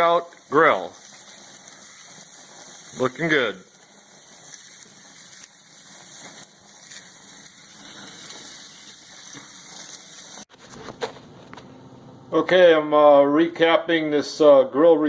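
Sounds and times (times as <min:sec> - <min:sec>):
steaks sizzling on a grill: 0:00.0 - 0:10.5.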